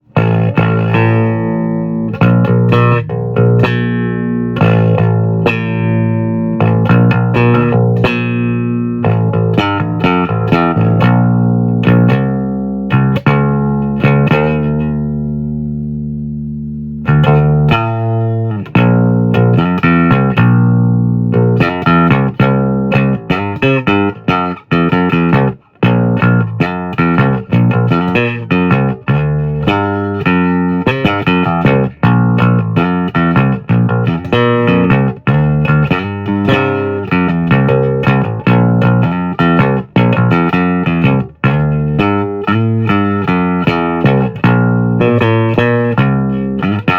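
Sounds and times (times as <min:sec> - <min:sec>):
bass line: 0:00.0 - 0:46.9
plucked guitar notes: 0:00.0 - 0:46.9.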